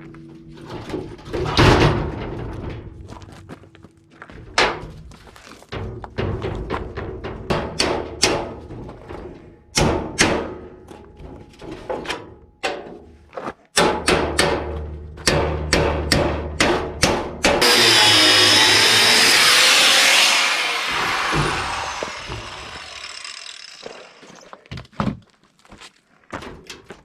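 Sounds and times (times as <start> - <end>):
power tool high whine: 17.6 - 24.5.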